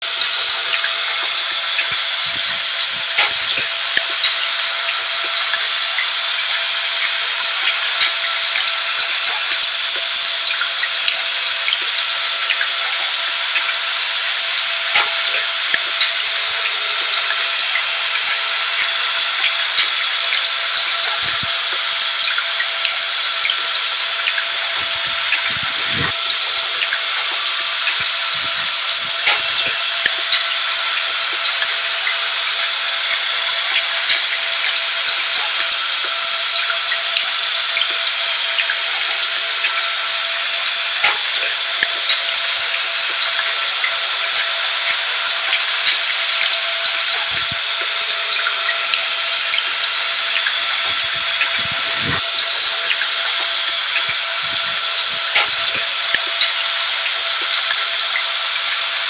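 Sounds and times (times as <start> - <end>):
drops ticking: 0.0 - 59.0
rain: 0.0 - 59.0
vacuum cleaner whine: 0.0 - 59.0
vacuum cleaner running: 49.9 - 55.2.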